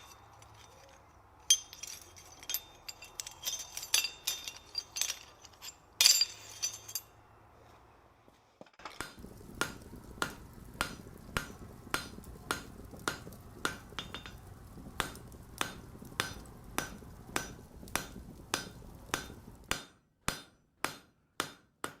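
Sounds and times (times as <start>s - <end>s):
hammer striking anvil: 11.4s - 22.0s.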